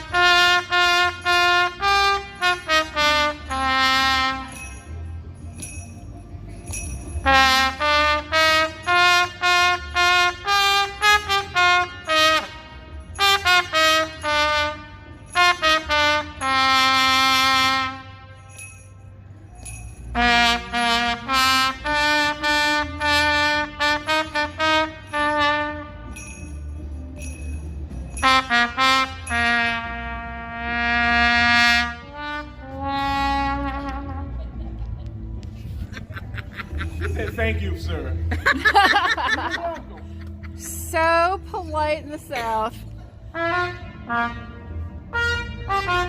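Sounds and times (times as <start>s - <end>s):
solo trumpet melody: 0.0s - 4.9s, 7.2s - 18.6s, 20.1s - 26.3s, 28.2s - 34.4s, 43.3s - 46.0s.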